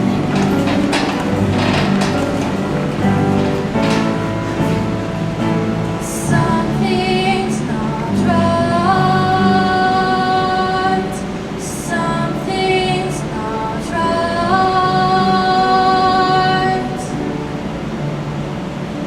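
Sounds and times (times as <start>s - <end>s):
instrumental accompaniment: 0.0s - 19.0s
woman singing: 6.0s - 17.4s.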